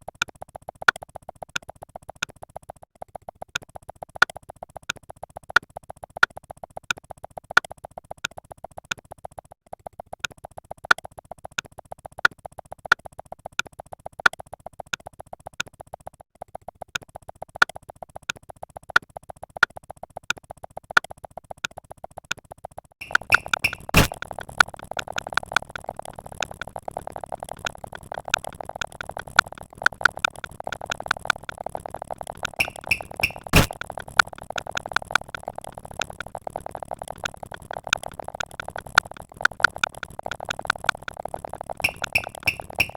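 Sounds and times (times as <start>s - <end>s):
electronic blips pulsing: 23.0s - 42.9s.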